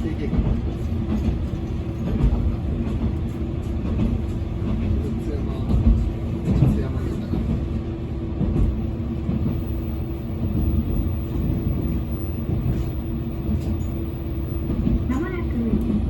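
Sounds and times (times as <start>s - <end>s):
wheels rumbling on track: 0.0s - 16.0s
diesel engine drone: 8.7s - 16.0s.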